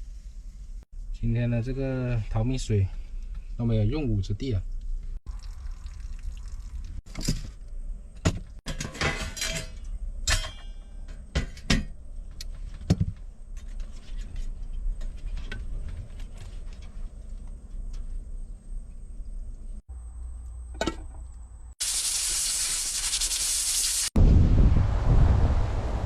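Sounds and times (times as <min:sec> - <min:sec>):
steady low rumble: 0:24.2 - 0:26.0.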